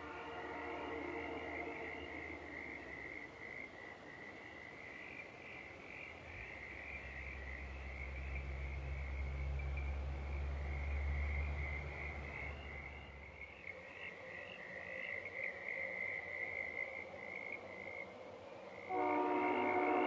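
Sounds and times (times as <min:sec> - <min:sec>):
locomotive horn chord: 0:00.0 - 0:03.0, 0:18.9 - 0:20.0
frogs calling: 0:00.0 - 0:20.0.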